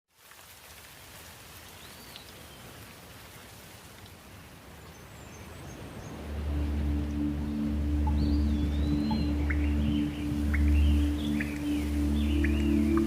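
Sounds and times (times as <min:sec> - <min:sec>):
steady rain falling: 0:00.1 - 0:13.0
low sustained music tones: 0:05.4 - 0:13.0.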